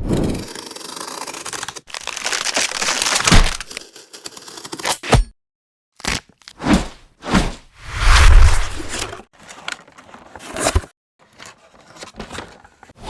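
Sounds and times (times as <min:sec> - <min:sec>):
packaging crackles and scrapes: 0:00.3 - 0:04.9, 0:08.1 - 0:13.0.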